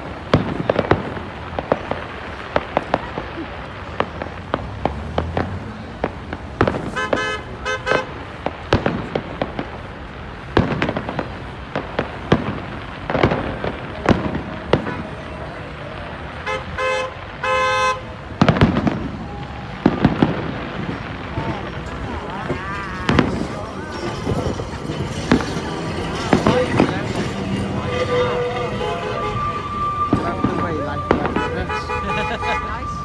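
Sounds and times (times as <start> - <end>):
fireworks bangs and crackling: 0.0 - 33.0
horn tooting: 4.5 - 8.6, 16.2 - 33.0.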